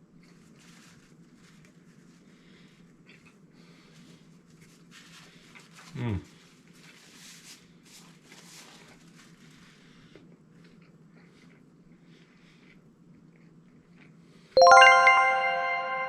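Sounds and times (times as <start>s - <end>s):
faint chewing: 10.1s - 14.2s
musical sting rolled chord: 14.6s - 16.0s.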